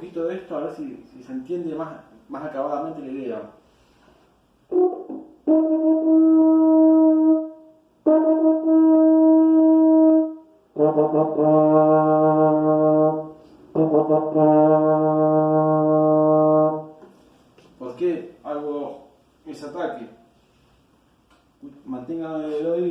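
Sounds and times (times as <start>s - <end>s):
low brass long held notes: 4.7s - 17.0s.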